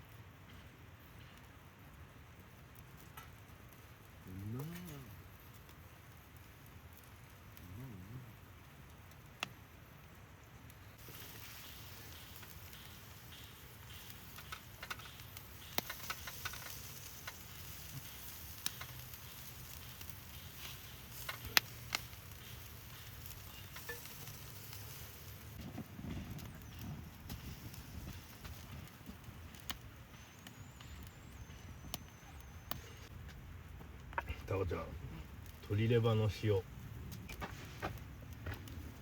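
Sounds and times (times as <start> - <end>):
wood campfire crackling: 0.0 - 39.0.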